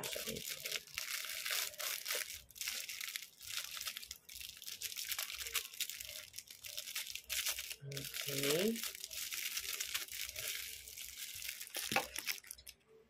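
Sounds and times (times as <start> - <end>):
plastic crinkling and rustling: 0.0 - 12.8.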